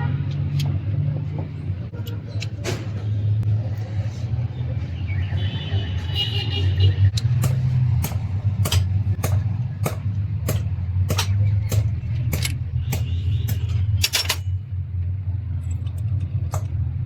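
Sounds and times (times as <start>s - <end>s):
engine humming: 0.3s - 17.0s.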